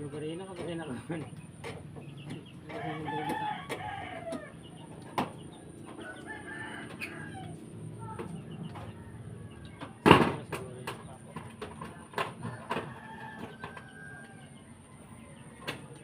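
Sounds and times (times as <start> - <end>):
rooster crowing: 2.7 - 4.6, 6.0 - 7.7, 12.4 - 15.5.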